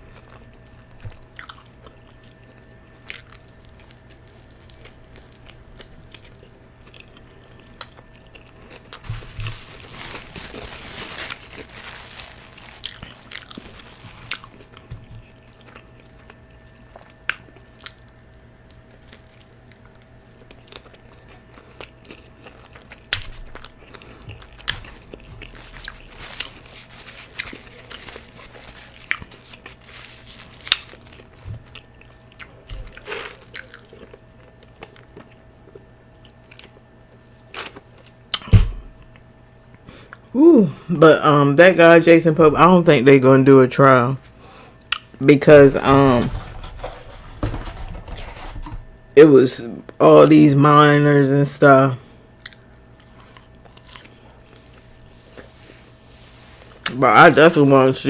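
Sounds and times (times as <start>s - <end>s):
person chewing food: 0.0s - 39.2s, 44.2s - 45.2s, 52.3s - 56.0s.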